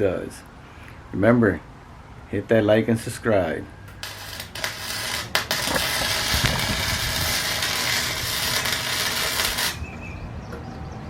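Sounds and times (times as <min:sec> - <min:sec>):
welding arc crackling: 0:03.9 - 0:09.8.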